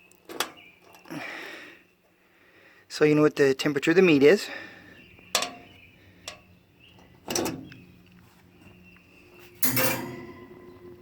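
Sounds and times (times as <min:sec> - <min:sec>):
metal grill parts clunking: 0:05.3 - 0:08.0, 0:09.4 - 0:11.0.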